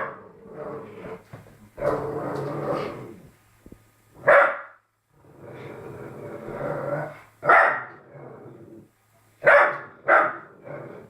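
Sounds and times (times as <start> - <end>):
dog growling low: 0.0 - 1.2, 1.8 - 3.3, 5.1 - 7.3, 7.9 - 8.9, 10.4 - 11.0
puppy barking: 4.2 - 4.8, 7.5 - 7.9, 9.4 - 10.4.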